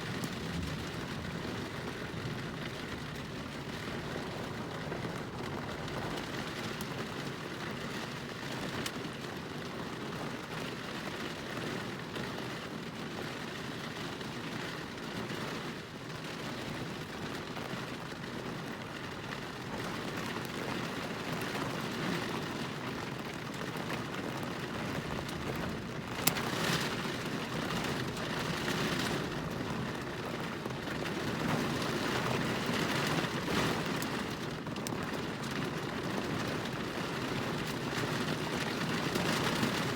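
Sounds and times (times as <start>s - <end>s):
thunder rumbling: 0.0s - 3.2s
steady rain: 0.0s - 39.9s.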